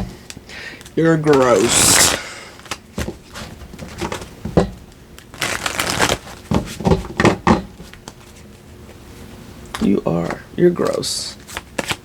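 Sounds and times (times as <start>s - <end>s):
cards tapping: 0.2s - 1.6s
cards being shuffled: 0.8s - 4.3s, 5.2s - 6.4s, 9.7s - 12.0s.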